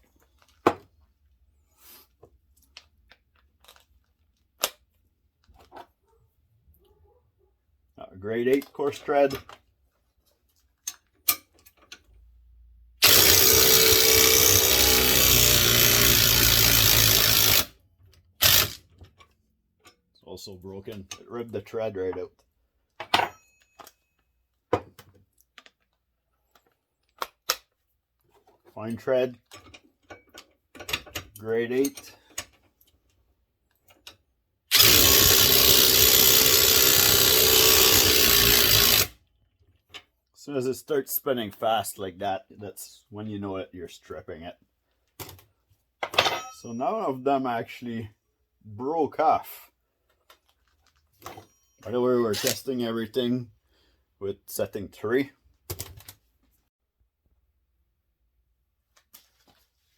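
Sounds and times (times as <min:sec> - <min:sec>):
impact wrench hammering on bolt: 0:13.0 - 0:17.7, 0:18.4 - 0:18.8, 0:34.7 - 0:39.1.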